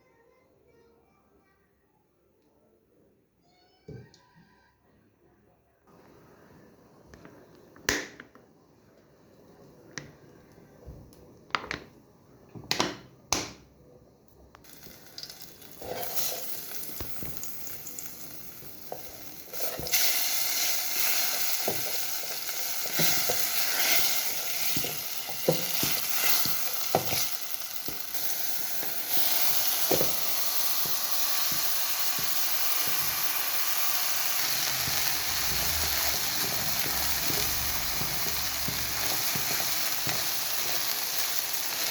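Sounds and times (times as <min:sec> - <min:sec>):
food sizzling in frying pan: 0:14.6 - 0:41.9.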